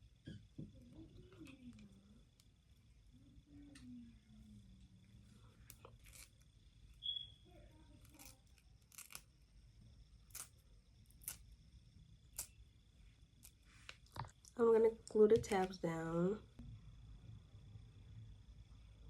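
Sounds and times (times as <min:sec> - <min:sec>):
scissors snipping lace: 0:08.0 - 0:09.2.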